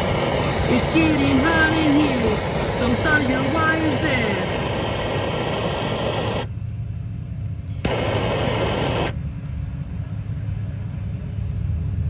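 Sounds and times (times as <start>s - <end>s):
torch flame hissing: 0.0s - 6.5s, 7.7s - 9.2s
torch ignition click: 0.0s - 6.5s, 7.7s - 9.2s
steady low rumble: 0.0s - 12.0s.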